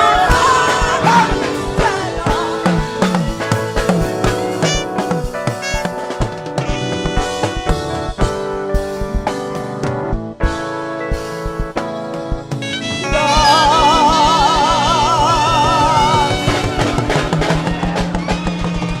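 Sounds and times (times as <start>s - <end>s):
drum beats: 0.0s - 19.0s
gospel band music: 0.0s - 19.0s.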